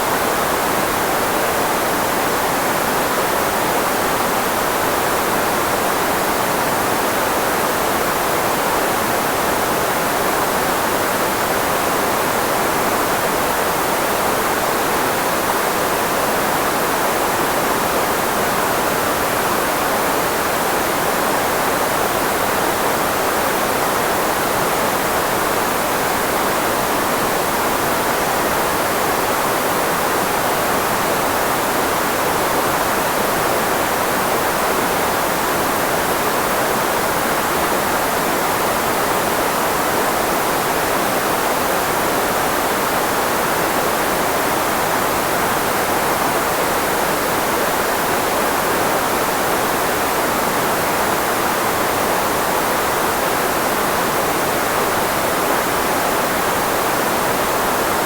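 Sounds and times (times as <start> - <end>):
filtered white noise hiss: 0.0 - 58.0.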